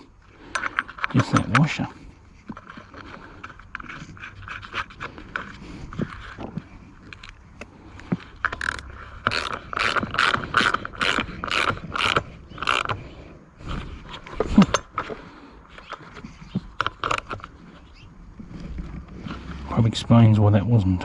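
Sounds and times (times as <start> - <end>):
pull starter ratcheting: 8.4 - 13.0.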